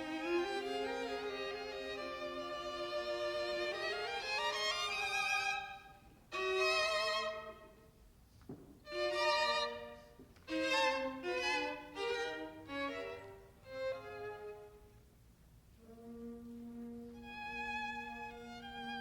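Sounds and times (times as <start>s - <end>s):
solo violin with vibrato: 8.9s - 14.8s.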